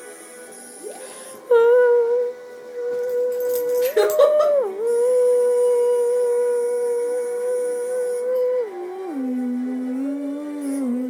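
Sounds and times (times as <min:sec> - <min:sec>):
quiet soundtrack music: 0:00.0 - 0:11.0.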